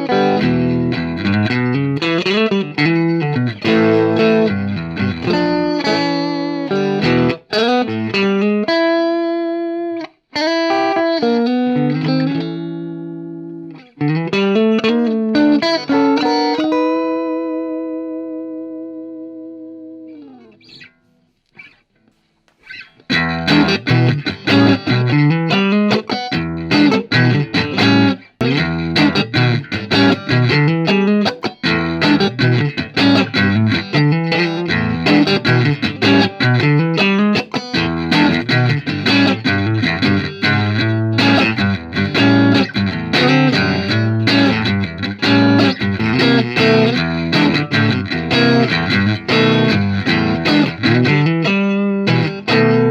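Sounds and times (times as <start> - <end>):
fast electric guitar lead: 0.0 - 9.3, 22.7 - 52.9.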